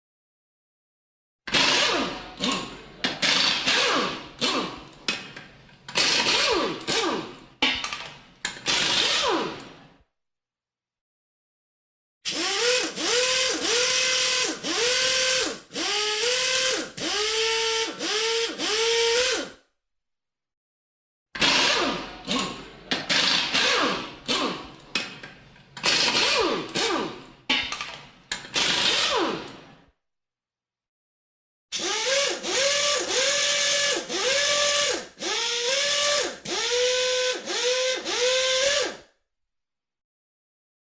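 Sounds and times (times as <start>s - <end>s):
pneumatic air wrench bursts: 1.5s - 4.9s, 6.0s - 7.4s, 8.6s - 9.6s, 12.3s - 19.6s, 21.4s - 24.8s, 25.8s - 27.2s, 28.4s - 29.6s, 31.7s - 39.1s.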